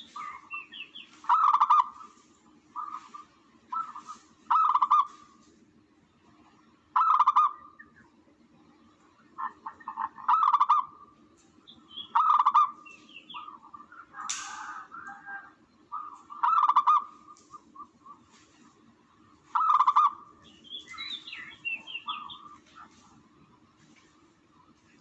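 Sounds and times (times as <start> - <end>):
rough noisy bird call: 0.0 - 5.4, 9.2 - 24.2
steady low hum: 0.0 - 25.0.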